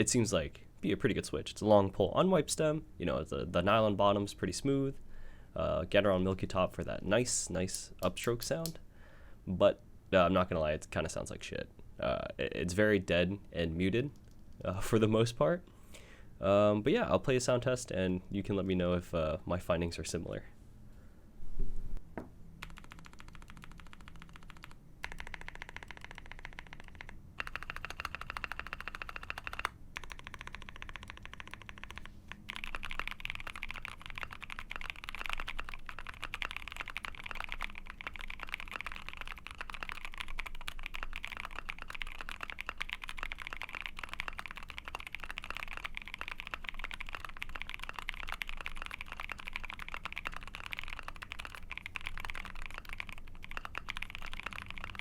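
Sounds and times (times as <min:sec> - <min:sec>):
mechanical keyboard typing: 0:22.6 - 0:55.0.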